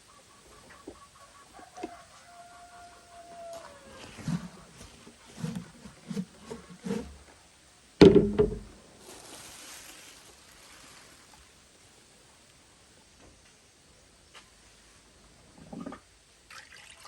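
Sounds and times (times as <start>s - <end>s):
chickens clucking: 0.0s - 7.0s
loud thump: 8.0s - 8.8s.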